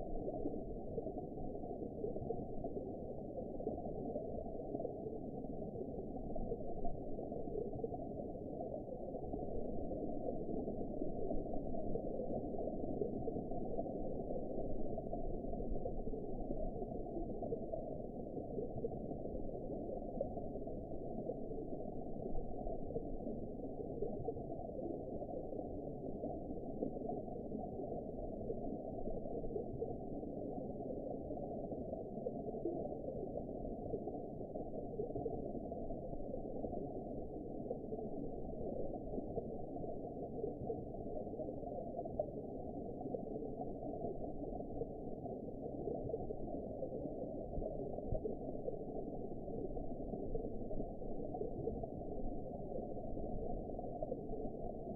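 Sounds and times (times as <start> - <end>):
muffled underwater water rush: 0.0 - 54.9.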